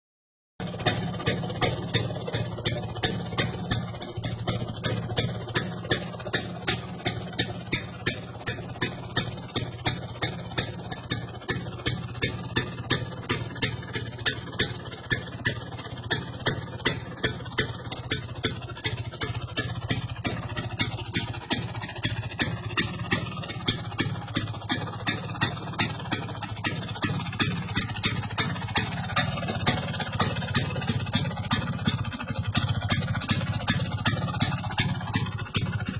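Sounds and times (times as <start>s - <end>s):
scooter engine idling with pops: 0.6s - 35.9s.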